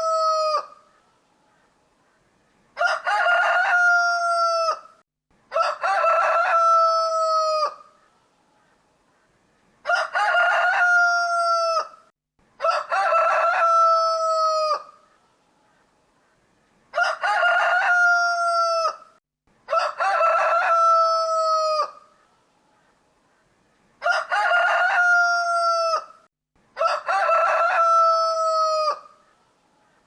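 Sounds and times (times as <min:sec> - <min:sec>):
rooster crowing: 0:00.0 - 0:00.8, 0:02.8 - 0:07.9, 0:09.8 - 0:15.0, 0:16.9 - 0:22.0, 0:24.0 - 0:26.2, 0:26.8 - 0:29.2.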